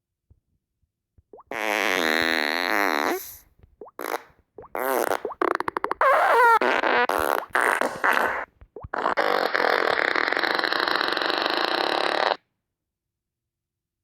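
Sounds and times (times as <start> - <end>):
fart sound effects: 1.4 - 12.4.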